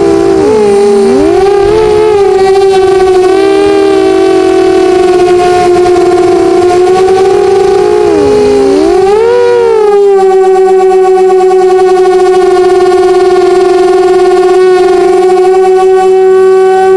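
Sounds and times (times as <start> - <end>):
quadcopter motors whining: 0.0 - 16.9.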